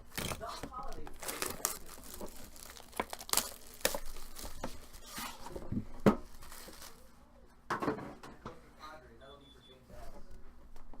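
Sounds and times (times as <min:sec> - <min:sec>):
wrapping crinkling and tearing: 0:00.0 - 0:05.6, 0:06.2 - 0:07.1.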